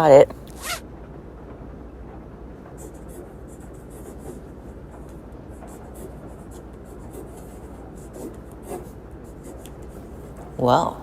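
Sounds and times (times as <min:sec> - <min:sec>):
steady low hum: 0:00.0 - 0:11.0
pen scratching on paper: 0:02.8 - 0:10.5.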